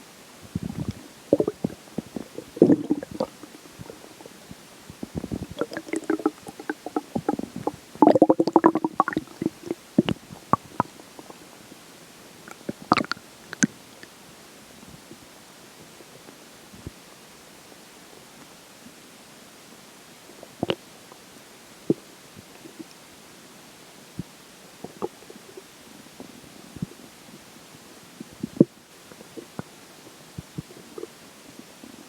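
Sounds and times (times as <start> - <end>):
stomach growling and gurgling: 0.5 - 11.4, 12.5 - 13.8, 20.4 - 20.8.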